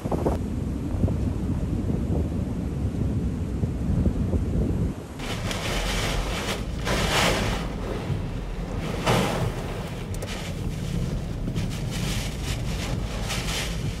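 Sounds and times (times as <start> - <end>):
wind buffeting microphone: 0.0 - 14.0
heavy surf: 5.2 - 14.0.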